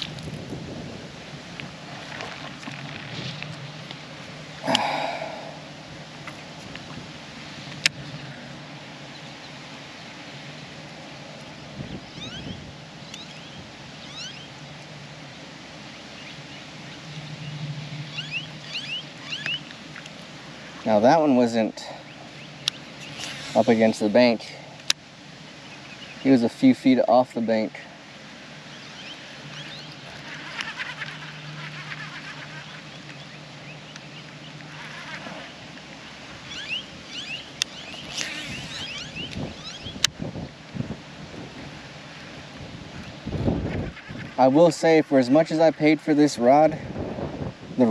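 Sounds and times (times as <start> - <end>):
low steady hum: 0.0 - 46.2
outdoor background noise: 0.0 - 47.9
small birds chirping: 4.5 - 5.8, 9.0 - 10.4, 11.1 - 40.6.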